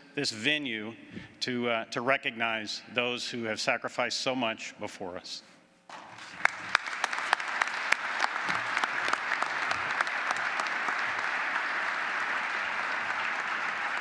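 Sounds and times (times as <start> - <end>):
audience applauding: 5.9 - 14.0.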